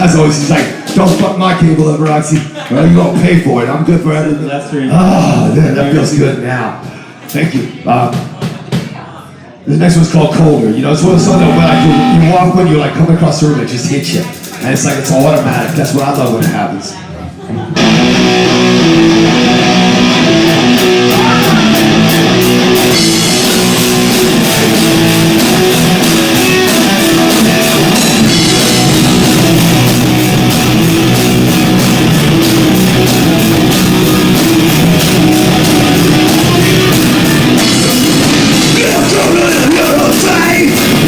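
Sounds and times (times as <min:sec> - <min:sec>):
distorted live rock band: 0:10.9 - 0:13.2, 0:13.9 - 0:16.7, 0:17.8 - 0:41.0
cymbal beat: 0:11.0 - 0:13.1.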